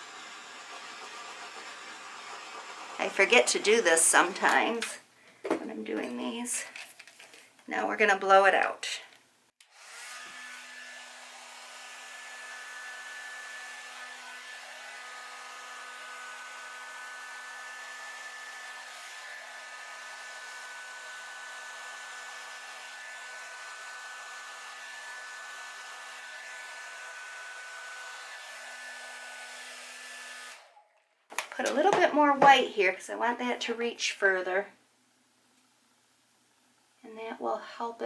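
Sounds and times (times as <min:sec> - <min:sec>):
blow dryer running: 0:00.0 - 0:04.9.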